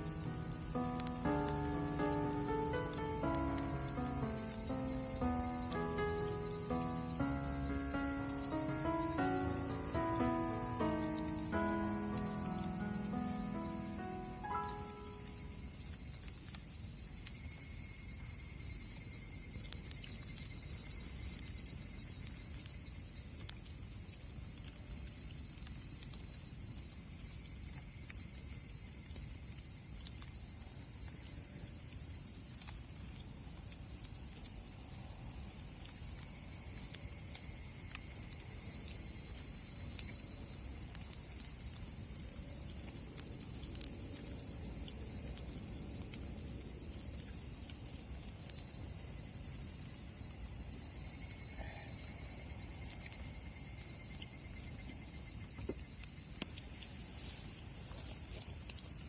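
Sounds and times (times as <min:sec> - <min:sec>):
campfire crackling and popping: 0:00.0 - 0:18.4, 0:19.5 - 0:29.3, 0:31.9 - 0:49.0
high-pitched insect chorus: 0:00.0 - 0:25.9, 0:26.5 - 0:59.0.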